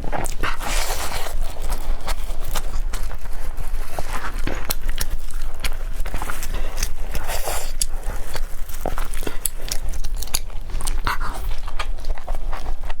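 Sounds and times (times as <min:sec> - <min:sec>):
person biting and chewing: 0:00.0 - 0:13.0.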